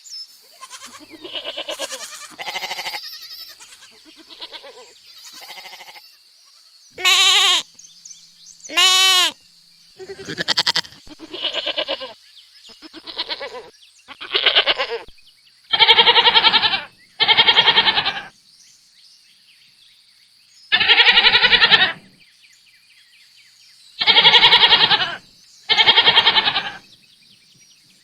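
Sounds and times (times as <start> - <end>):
goat bleating: 0.5 - 6.1, 7.0 - 7.7, 8.7 - 9.4, 10.0 - 12.2, 12.8 - 15.1, 15.7 - 18.3, 20.7 - 22.1, 24.0 - 26.8.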